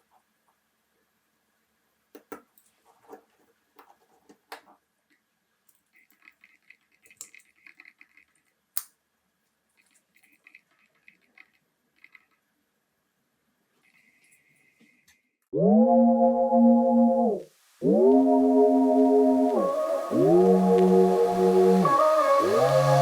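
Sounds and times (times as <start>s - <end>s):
rapid fine clicking: 5.7s - 8.9s, 9.8s - 12.5s
metallic clicks of watch parts: 5.7s - 9.0s, 9.8s - 12.4s.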